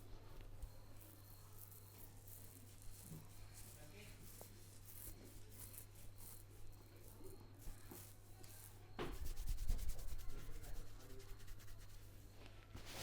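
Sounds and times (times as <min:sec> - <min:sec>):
hands rubbing scalp and hair: 0:09.1 - 0:13.0.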